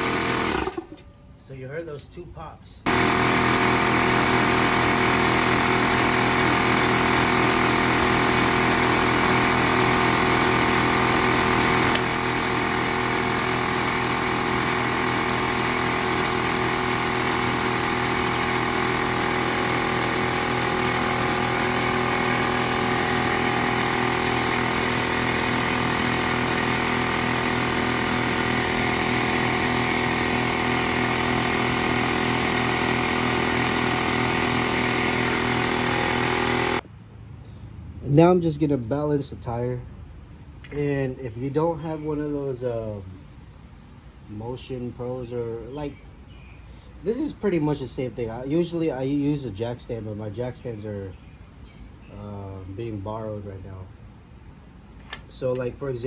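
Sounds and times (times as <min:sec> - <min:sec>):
air compressor motor running: 0:00.0 - 0:01.2, 0:02.8 - 0:36.9.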